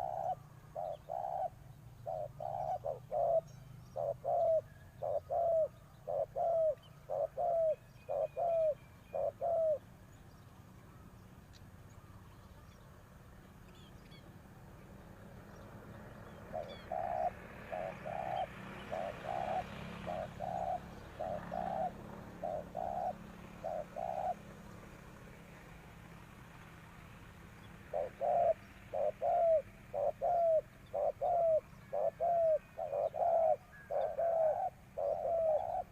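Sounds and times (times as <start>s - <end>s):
doves cooing: 0.0s - 9.8s, 16.3s - 24.4s, 27.9s - 35.9s.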